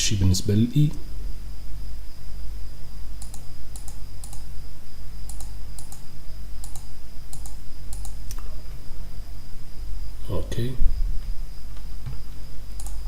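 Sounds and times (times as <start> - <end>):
faint high whine: 0.0 - 13.0
low electrical hum: 0.0 - 13.0
mouse and keyboard clicks: 3.2 - 4.4, 5.3 - 8.5.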